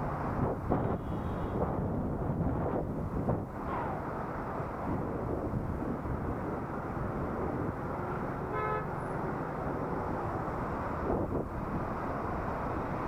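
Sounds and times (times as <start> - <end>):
wind and road rumble: 0.0 - 13.0
vehicle horn toot: 8.4 - 9.0.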